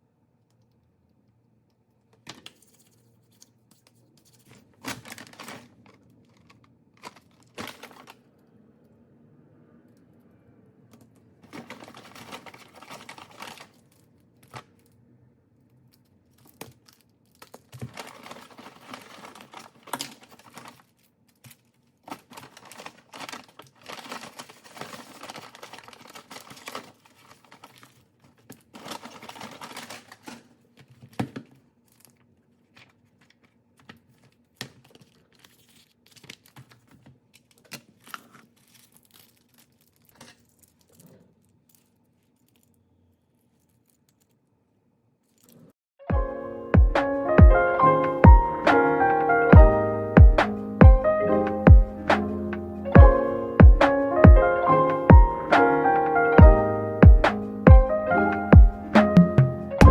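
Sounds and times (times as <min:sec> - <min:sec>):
rustling and crinkling: 0:02.1 - 0:08.5, 0:10.9 - 0:44.6.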